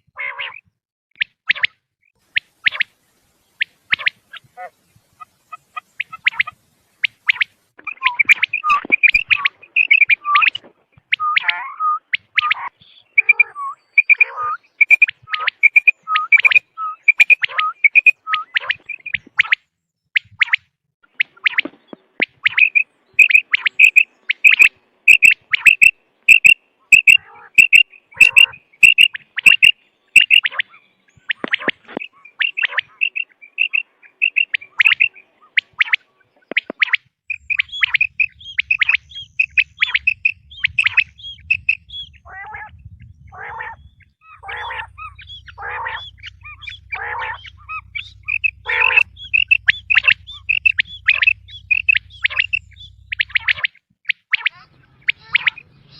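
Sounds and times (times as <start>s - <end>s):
quail calls: 0.0s - 0.7s, 1.5s - 2.9s, 3.6s - 19.6s, 20.2s - 55.9s
lower harsher bird calls: 1.5s - 55.9s
low steady hum: 41.7s - 53.6s.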